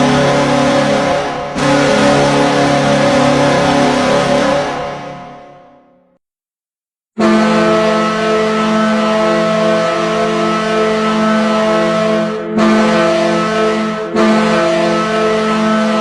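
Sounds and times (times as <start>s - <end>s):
goal horn blast: 0.0s - 5.9s, 7.2s - 16.0s.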